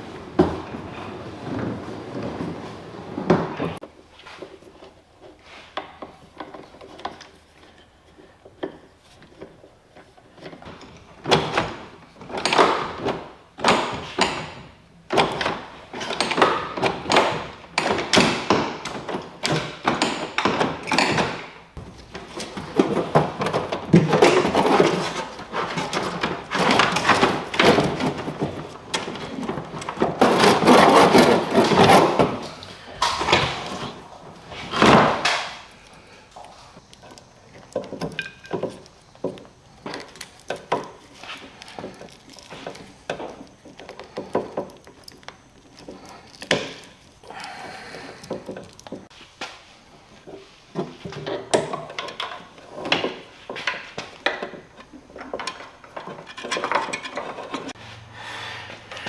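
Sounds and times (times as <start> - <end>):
knocks and clunks of handling: 5.8 - 49.2, 50.2 - 57.8.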